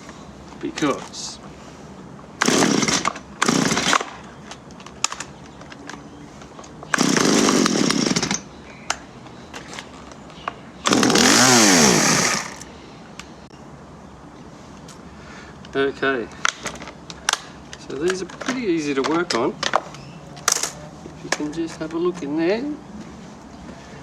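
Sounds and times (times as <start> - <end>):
chainsaw starting and dying: 2.4 - 4.0, 6.9 - 8.4, 10.9 - 12.7.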